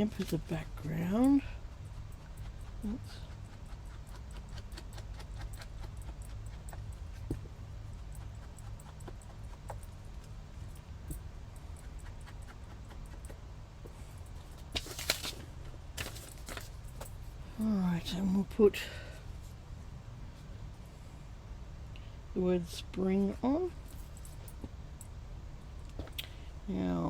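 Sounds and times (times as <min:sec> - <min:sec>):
low steady hum: 0:00.0 - 0:27.0
paper and tools tapping and clicking: 0:14.6 - 0:15.4, 0:16.0 - 0:17.1
paper rustles: 0:14.6 - 0:17.1.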